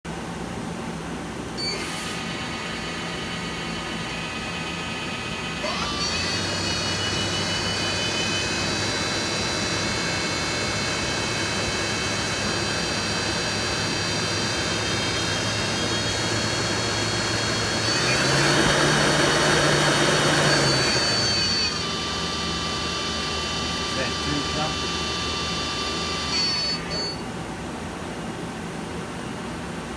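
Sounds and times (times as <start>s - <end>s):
machine whining: 1.6s - 27.3s.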